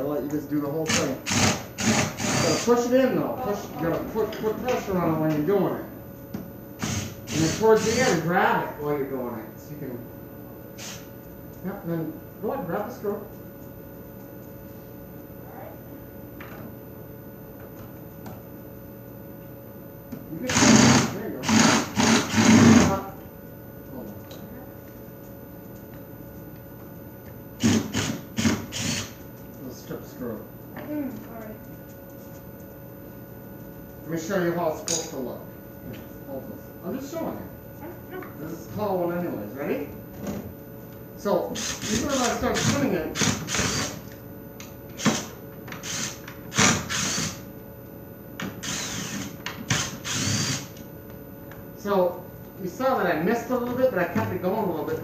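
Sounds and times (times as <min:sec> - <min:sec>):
cordless drill whirring: 0:00.9 - 0:02.7, 0:06.8 - 0:07.9, 0:20.5 - 0:22.9, 0:27.6 - 0:29.1, 0:41.6 - 0:44.0, 0:45.0 - 0:47.4, 0:48.6 - 0:50.7.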